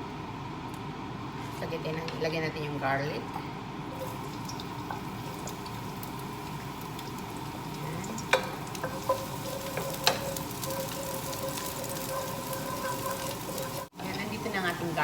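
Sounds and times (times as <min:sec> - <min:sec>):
garlic sizzling in oil: 0:03.9 - 0:15.0.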